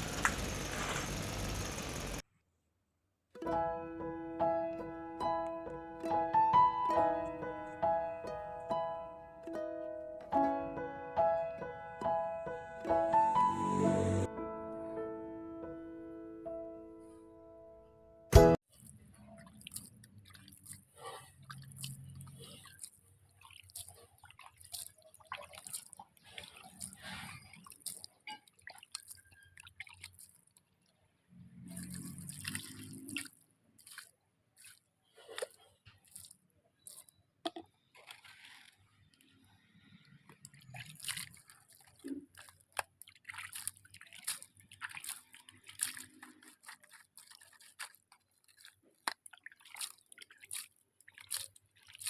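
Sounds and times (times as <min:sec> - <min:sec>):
wet squelches: 0:18.6 - 0:52.0
water drips: 0:18.7 - 0:34.8, 0:39.1 - 0:52.0
rustling: 0:37.9 - 0:39.4.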